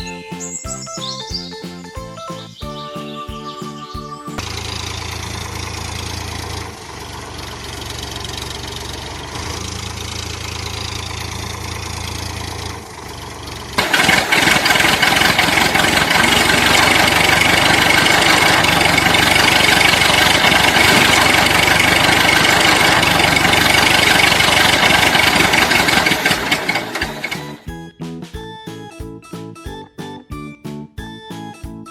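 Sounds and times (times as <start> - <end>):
loud engine with high whine: 4.4 - 27.7
tractor engine idling: 4.4 - 27.7.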